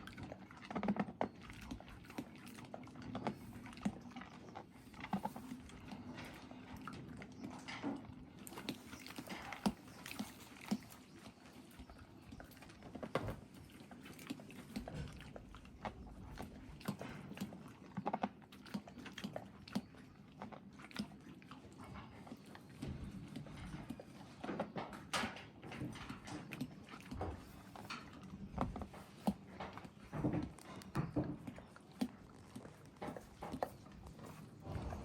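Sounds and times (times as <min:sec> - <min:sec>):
horse crunching hard candy: 0:27.8 - 0:35.0.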